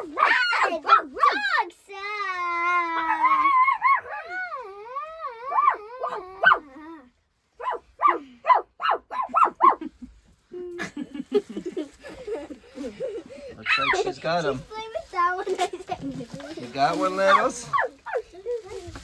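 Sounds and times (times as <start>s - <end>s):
dog yipping: 0.0s - 1.5s, 3.0s - 4.6s, 5.3s - 6.7s, 7.6s - 9.9s, 13.6s - 14.0s, 17.2s - 18.3s
dog howling: 3.0s - 6.6s.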